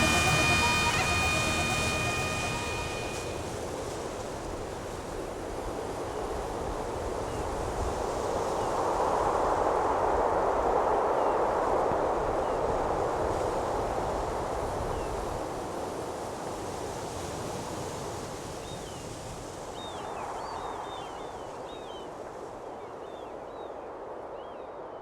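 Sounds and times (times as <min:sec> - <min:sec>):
steady rushing noise: 0:00.0 - 0:03.6.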